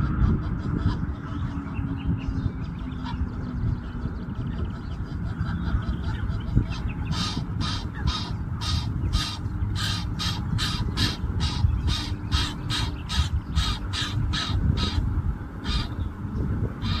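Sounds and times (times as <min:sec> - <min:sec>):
low background rumble: 0:00.0 - 0:17.0
goose rasping calls: 0:05.2 - 0:15.0.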